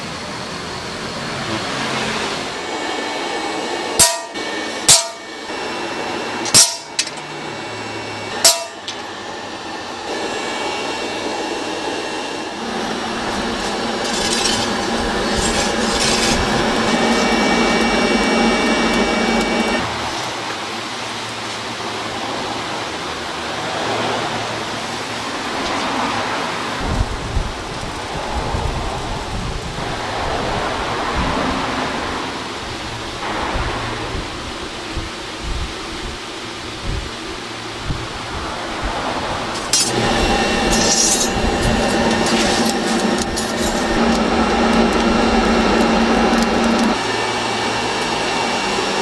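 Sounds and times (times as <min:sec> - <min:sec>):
mechanical workshop noise: 0:00.0 - 0:20.6, 0:39.4 - 0:49.0
sharp metallic strikes: 0:04.0 - 0:05.4, 0:06.4 - 0:07.3, 0:08.4 - 0:09.0.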